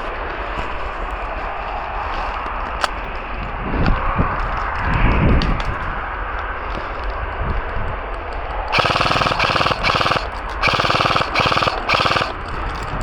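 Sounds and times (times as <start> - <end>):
airsoft gun firing bursts: 8.7 - 12.8.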